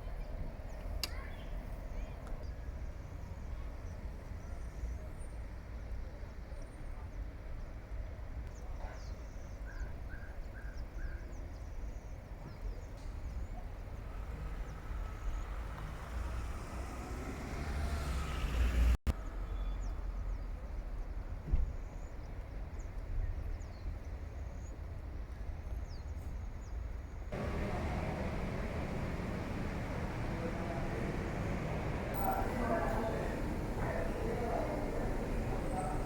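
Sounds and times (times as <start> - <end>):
aircraft engine noise: 27.4 - 36.0.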